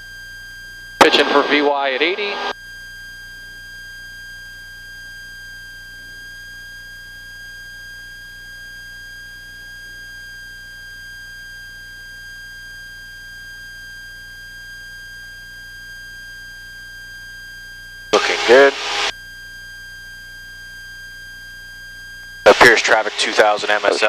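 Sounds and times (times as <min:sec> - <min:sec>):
high-pitched whine: 0:01.0 - 0:02.5, 0:18.2 - 0:19.1, 0:22.5 - 0:24.0
low engine drone: 0:01.0 - 0:02.5, 0:18.2 - 0:19.1, 0:22.5 - 0:24.0.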